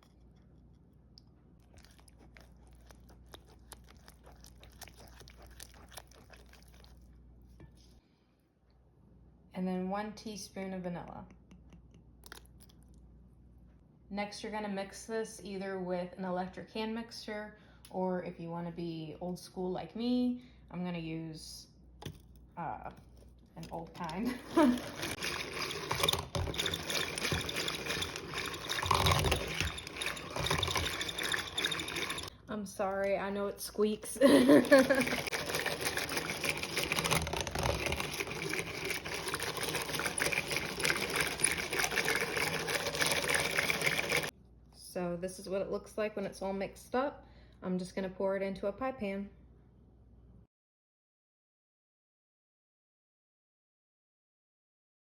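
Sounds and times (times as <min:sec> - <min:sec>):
batter sloshing: 0:01.6 - 0:08.0, 0:23.0 - 0:44.3
egg beater churning batter: 0:01.7 - 0:07.1, 0:23.6 - 0:44.3
kitchen utensils clicking: 0:23.7 - 0:32.3, 0:34.2 - 0:44.3
beater gears squeaking: 0:24.4 - 0:32.3.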